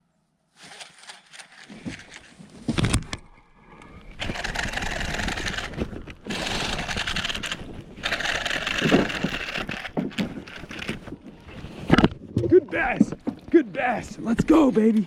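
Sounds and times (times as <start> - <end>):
fishing reel whirring: 4.2 - 10.9.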